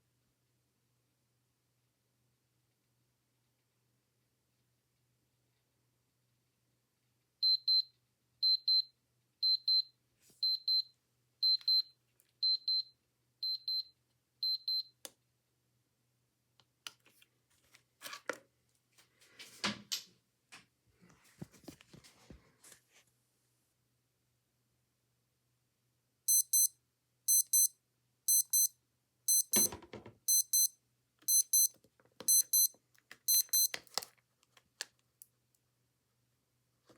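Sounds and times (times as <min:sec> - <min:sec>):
digital watch alarm beeping: 0:07.4 - 0:11.8, 0:12.4 - 0:14.9, 0:26.3 - 0:26.7, 0:27.3 - 0:27.7, 0:28.3 - 0:28.7, 0:29.3 - 0:29.7, 0:30.3 - 0:31.7, 0:32.3 - 0:32.7, 0:33.3 - 0:33.8.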